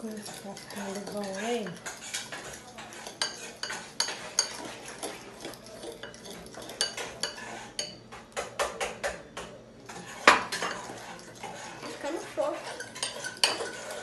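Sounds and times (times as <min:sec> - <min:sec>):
fork clinking against bowl: 0:00.1 - 0:08.5, 0:12.6 - 0:14.0.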